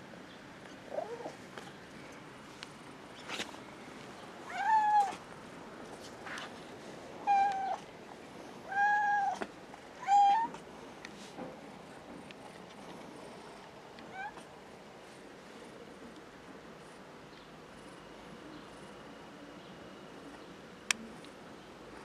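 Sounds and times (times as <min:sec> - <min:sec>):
cat meowing: 0:04.5 - 0:05.2.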